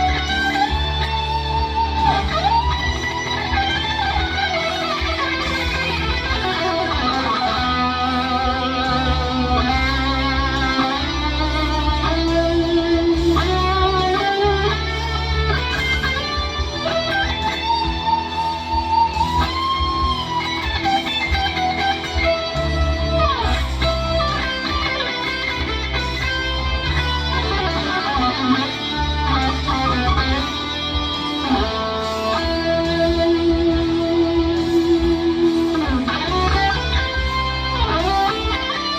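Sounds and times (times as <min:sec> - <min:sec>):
bass line: 0:00.0 - 0:38.9
electric guitar rock lead: 0:00.0 - 0:38.9.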